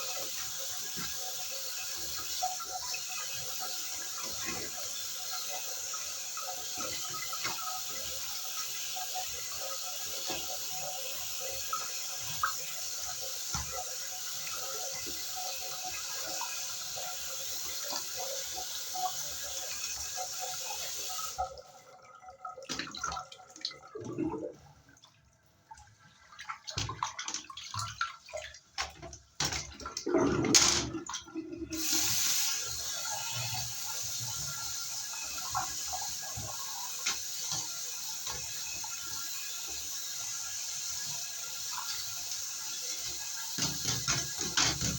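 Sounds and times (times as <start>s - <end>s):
water spraying: 0.0s - 21.4s, 31.8s - 44.9s.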